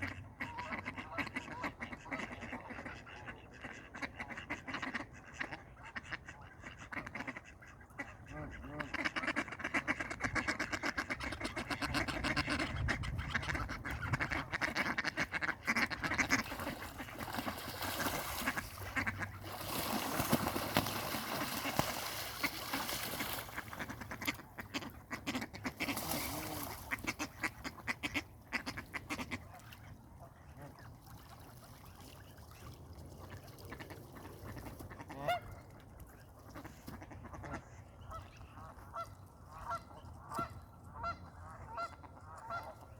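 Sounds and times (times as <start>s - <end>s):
ducks fighting and calling: 0.0s - 29.8s.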